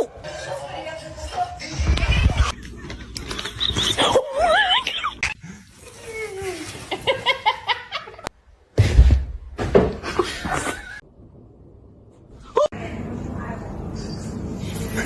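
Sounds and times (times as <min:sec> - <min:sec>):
people laughing: 0:02.8 - 0:05.4, 0:06.8 - 0:08.3.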